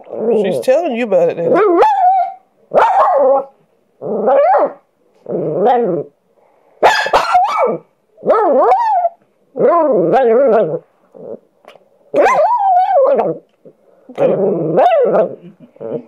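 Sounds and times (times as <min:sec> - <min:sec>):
dog barking: 0:01.5 - 0:03.5, 0:06.8 - 0:09.1, 0:12.2 - 0:13.2.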